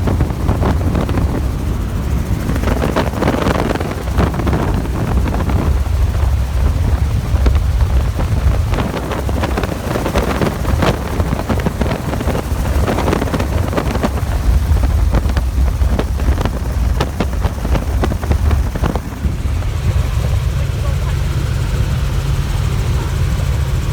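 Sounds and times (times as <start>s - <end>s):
helicopter engine and rotor drone: 0.0s - 23.9s
wind buffeting microphone: 0.0s - 23.9s.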